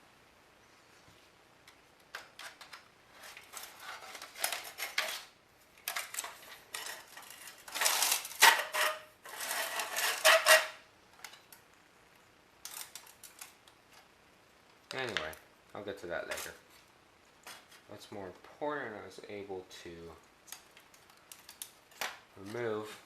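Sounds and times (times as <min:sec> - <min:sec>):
plastic parts clicking and rattling: 0:01.7 - 0:11.6, 0:12.6 - 0:14.1, 0:20.4 - 0:22.2.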